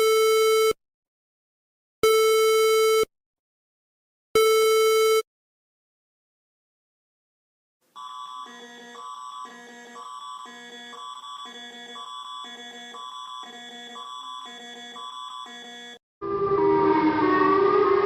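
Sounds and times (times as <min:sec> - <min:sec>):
electronic two-tone alarm: 0:08.0 - 0:18.0.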